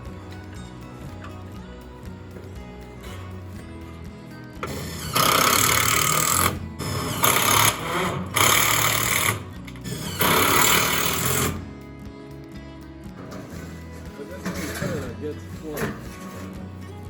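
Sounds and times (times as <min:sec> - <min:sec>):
power driver driving screws: 0:04.6 - 0:11.6.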